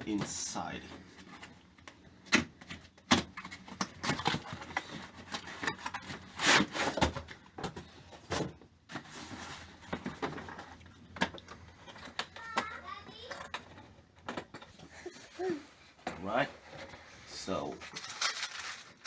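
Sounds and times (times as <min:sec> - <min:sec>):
rustling scrape: 0:08.9 - 0:10.7.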